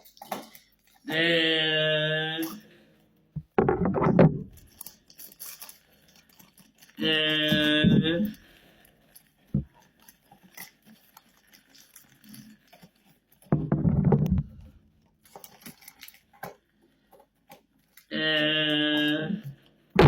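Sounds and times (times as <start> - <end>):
gift package being opened: 4.5 - 18.1
wordless vocal sound: 7.0 - 8.4.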